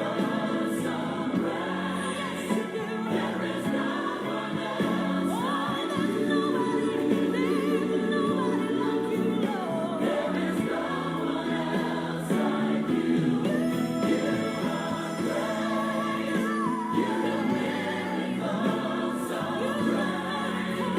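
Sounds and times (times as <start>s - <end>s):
gospel choir singing: 0.0s - 20.9s
musical accompaniment: 0.0s - 20.9s.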